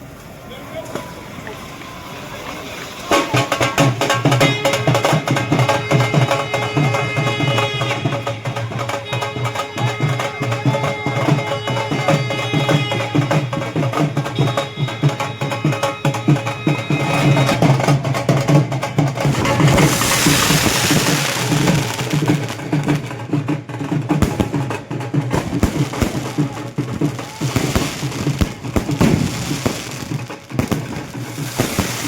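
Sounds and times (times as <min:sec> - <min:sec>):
held melodic tones: 0:00.8 - 0:32.0
quick percussion beat: 0:03.1 - 0:32.0.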